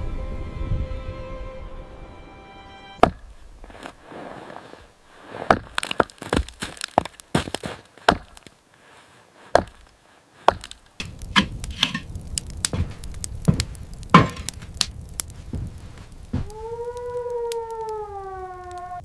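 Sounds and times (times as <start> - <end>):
sharp knocks and cracks: 3.0 - 4.1, 5.2 - 8.6, 9.5 - 18.0
light crackling: 3.0 - 19.0
low rumble: 11.0 - 17.3.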